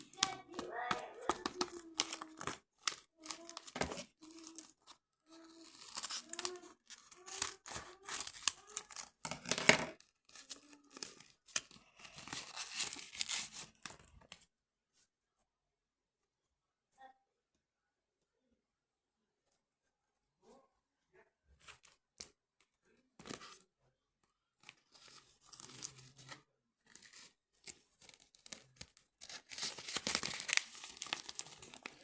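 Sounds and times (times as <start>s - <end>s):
crinkling and tearing: 0.0s - 14.5s, 24.6s - 32.0s.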